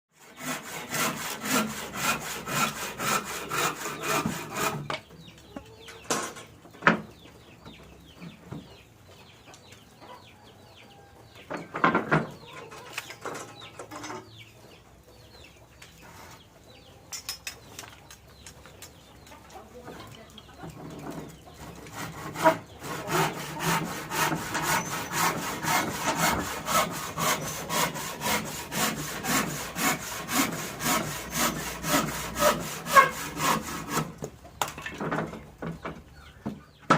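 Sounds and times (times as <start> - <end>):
handsaw cutting wood: 0.2 - 4.9, 21.7 - 34.2.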